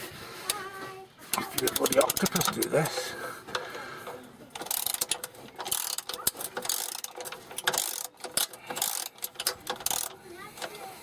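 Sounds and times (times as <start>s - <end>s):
metallic clicking of hand tools: 1.3s - 10.9s.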